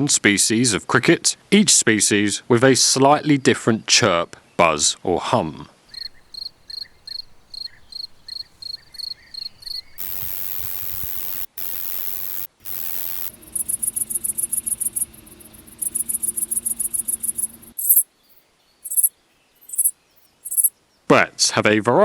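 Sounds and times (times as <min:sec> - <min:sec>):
high buzzing cricket trill: 0:05.9 - 0:18.0, 0:18.8 - 0:20.7
crickets chirping: 0:05.9 - 0:20.7.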